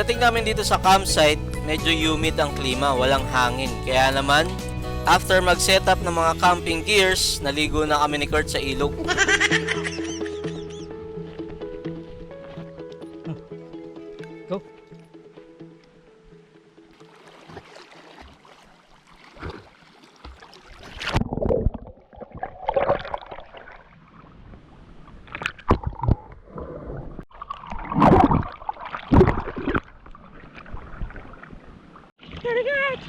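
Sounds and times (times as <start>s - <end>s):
river water splashing: 15.2s - 21.5s.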